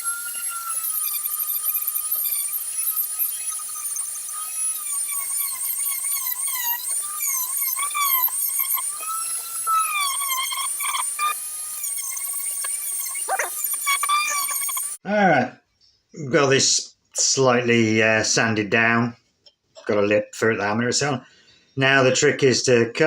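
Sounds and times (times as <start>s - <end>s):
power tool sanding wood: 0.0s - 15.0s.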